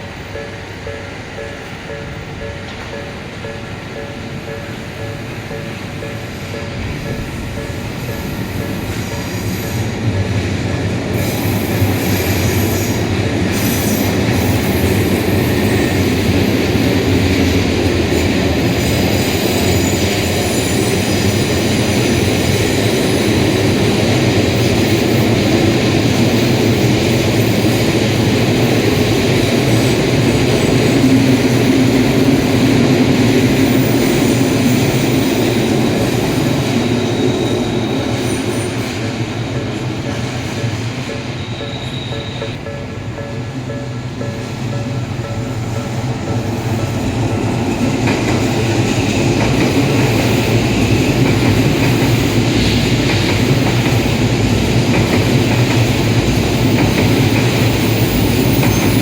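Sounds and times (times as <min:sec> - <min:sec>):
train wheels rumbling on rails: 0:00.0 - 0:59.0
high-pitched wheel squeal: 0:33.7 - 0:39.0, 0:41.1 - 0:42.6.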